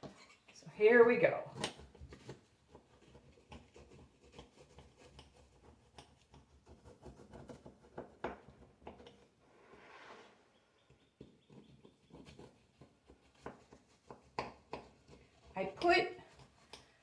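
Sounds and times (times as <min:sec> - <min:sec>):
knife cutting pie crust: 0:01.5 - 0:09.2, 0:11.1 - 0:17.0.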